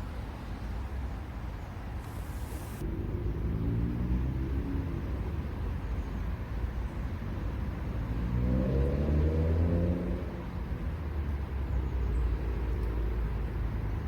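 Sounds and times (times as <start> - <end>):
vehicle passing by: 7.9 - 10.6.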